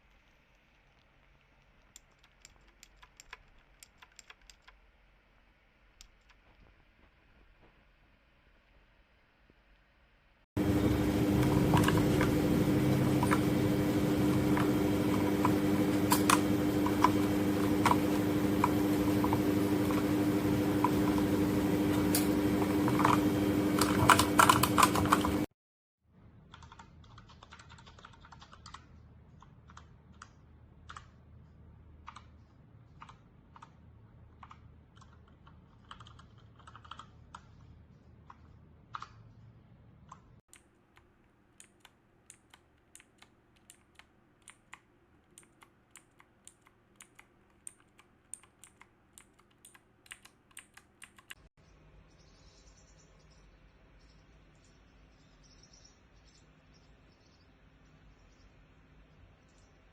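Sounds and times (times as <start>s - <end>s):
mechanical keyboard typing: 1.8s - 4.9s, 11.2s - 25.5s, 26.5s - 31.2s, 32.9s - 37.6s, 40.1s - 51.5s
electrical hum: 10.6s - 25.5s, 34.4s - 51.5s.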